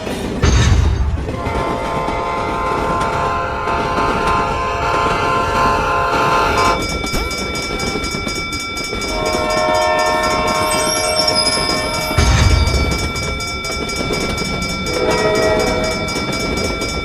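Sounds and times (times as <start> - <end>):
clatter of passing train: 0.0 - 17.0
railroad crossing bell ringing: 0.0 - 17.0
train horn chord: 1.3 - 6.8, 9.1 - 13.3, 14.9 - 16.2.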